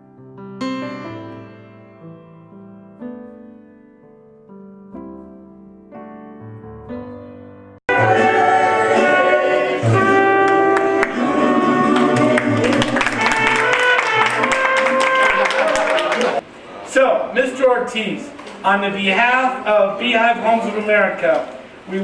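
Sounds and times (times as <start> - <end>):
slow piano music: 0.0 - 15.9.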